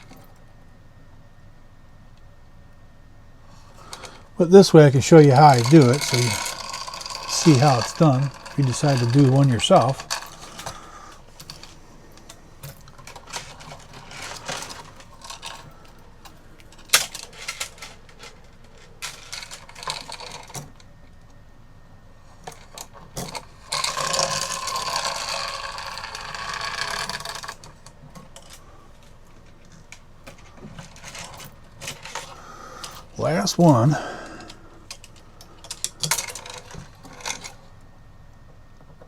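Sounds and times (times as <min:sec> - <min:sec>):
clock chains clinking and rattling: 0:03.9 - 0:16.0, 0:16.6 - 0:20.7, 0:22.4 - 0:28.6, 0:30.3 - 0:37.6.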